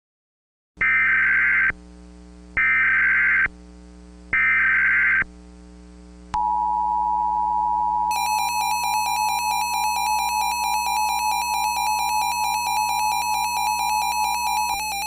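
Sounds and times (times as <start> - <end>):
two-tone alert signal: 6.4 - 15.0
rapid high pulsing beep: 8.1 - 15.0.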